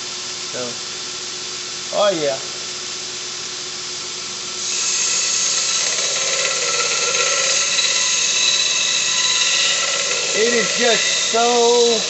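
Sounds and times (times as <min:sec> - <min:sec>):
belt sander whining: 0:04.6 - 0:12.0
metal grinding hiss: 0:04.6 - 0:12.0.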